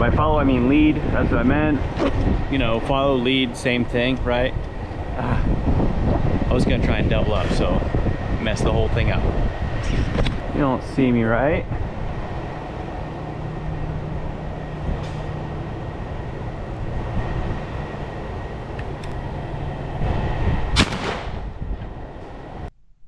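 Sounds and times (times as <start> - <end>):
mechanical hum: 0.0 - 22.8
shotgun shot: 20.8 - 21.4.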